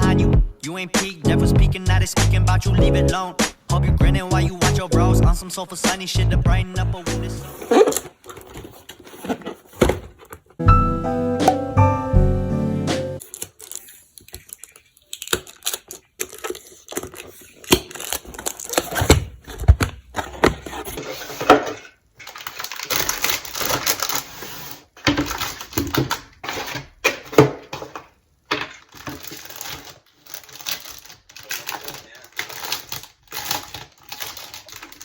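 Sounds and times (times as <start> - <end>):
hands handling small objects: 13.2 - 35.0.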